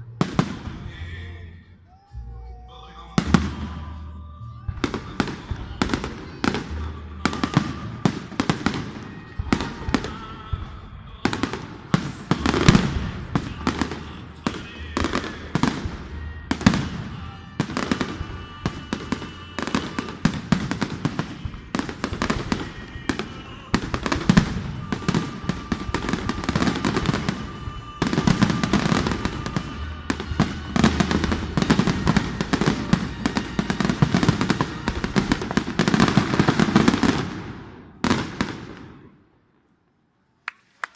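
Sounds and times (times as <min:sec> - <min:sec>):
fireworks bangs and crackling: 0:00.0 - 0:01.4, 0:03.2 - 0:39.6.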